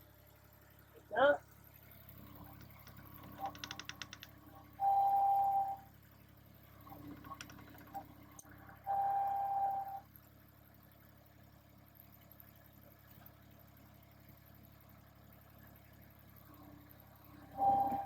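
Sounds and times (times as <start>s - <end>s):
electronic beeps: 2.3s - 5.9s, 6.8s - 10.0s, 17.4s - 18.0s
rattle of clicks: 2.4s - 4.4s, 6.9s - 8.5s.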